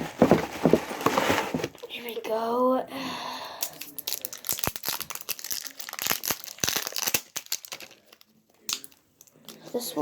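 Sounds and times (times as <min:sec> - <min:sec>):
slime container crinkling and crackling: 0:04.0 - 0:09.6.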